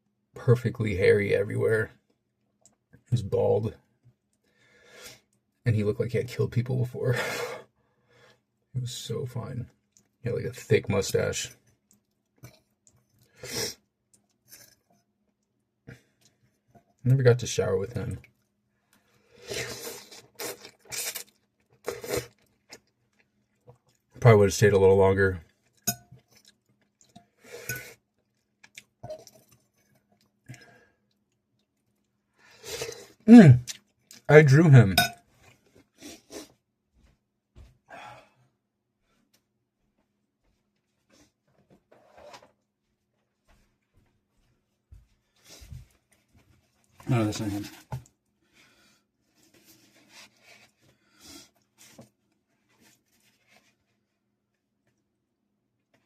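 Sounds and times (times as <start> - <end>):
person chewing food: 11.6 - 13.4, 19.6 - 24.1, 25.5 - 34.3.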